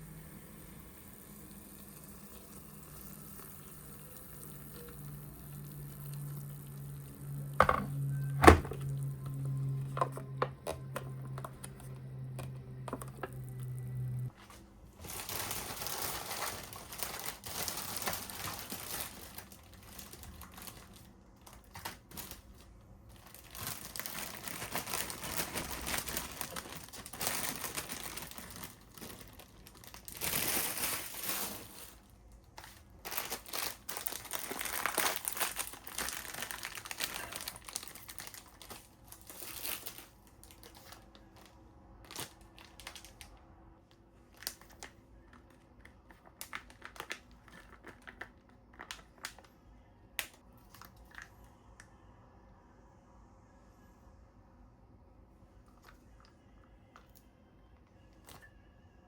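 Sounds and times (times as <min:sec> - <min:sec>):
low hum: 0:00.0 - 0:14.5
packaging crinkling and rustling: 0:04.8 - 0:49.6.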